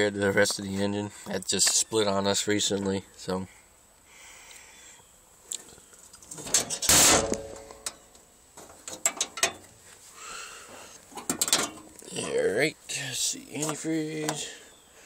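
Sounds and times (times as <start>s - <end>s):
metal parts clunking and clicking: 6.2s - 8.0s, 8.6s - 9.7s, 11.1s - 11.9s.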